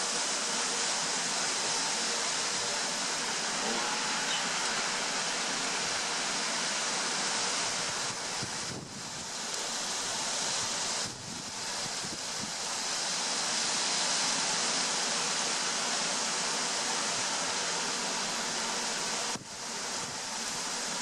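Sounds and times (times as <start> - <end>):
strong gusty wind: 7.5 - 12.7.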